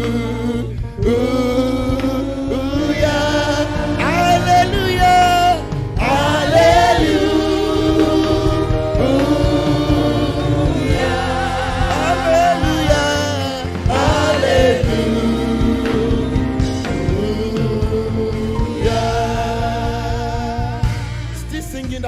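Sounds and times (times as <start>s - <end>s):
keyboard and bass accompaniment: 0.0s - 22.0s
voices singing gospel melody: 0.0s - 22.0s.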